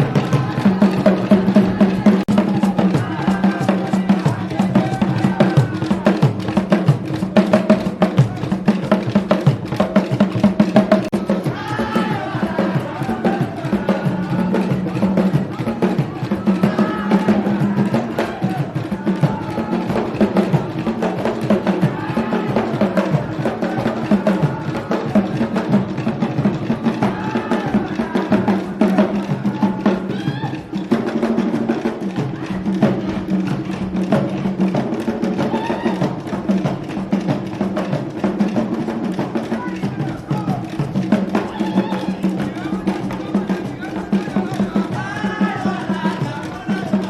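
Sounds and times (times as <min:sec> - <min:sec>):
person singing: 0:00.0 - 0:06.8, 0:11.0 - 0:33.8, 0:39.4 - 0:47.0
fast dense drumming: 0:00.0 - 0:47.0
sharp clacking percussion: 0:00.0 - 0:47.0.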